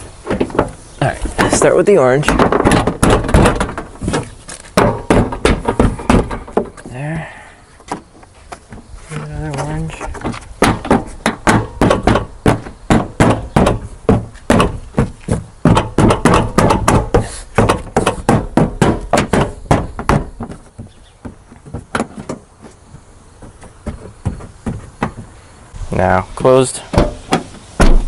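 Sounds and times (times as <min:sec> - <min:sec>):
sharp plastic knocks: 0:00.2 - 0:06.9, 0:10.1 - 0:22.4.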